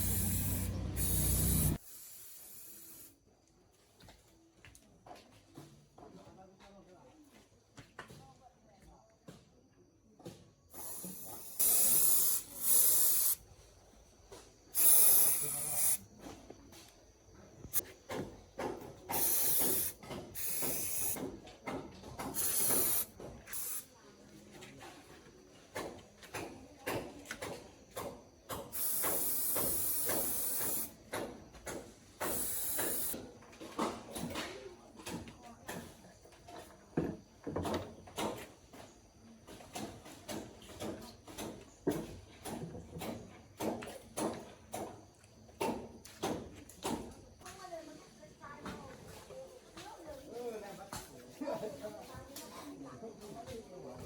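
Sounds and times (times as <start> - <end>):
hissing spray bursts: 0.0 - 3.2, 10.7 - 13.5, 14.7 - 16.1, 19.1 - 21.3, 22.2 - 23.9, 28.6 - 31.0, 32.2 - 33.2.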